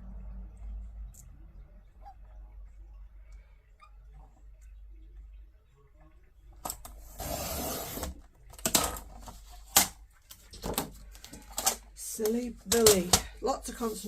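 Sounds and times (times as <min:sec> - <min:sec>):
paper being cut: 0:07.1 - 0:08.2.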